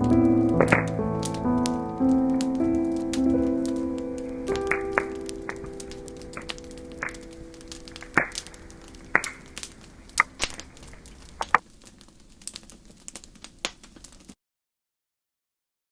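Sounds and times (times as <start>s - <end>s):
background music: 0.0s - 10.6s
campfire crackling and popping: 0.0s - 14.4s.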